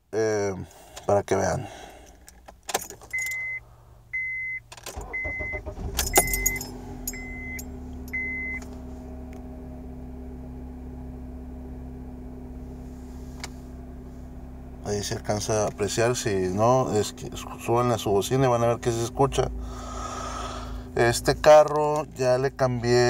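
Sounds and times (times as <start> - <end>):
car engine cranking and starting: 0.7 - 23.0
keys jangling: 2.0 - 3.4, 5.9 - 7.3
car warning chime beeping: 3.1 - 8.7
car engine idling with whistle: 3.2 - 14.8.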